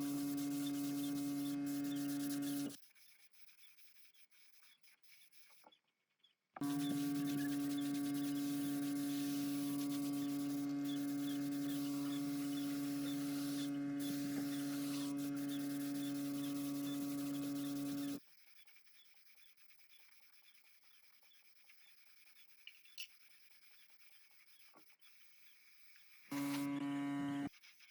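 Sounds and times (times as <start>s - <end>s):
electric hum: 0.0s - 2.8s, 6.6s - 18.2s, 26.3s - 27.5s.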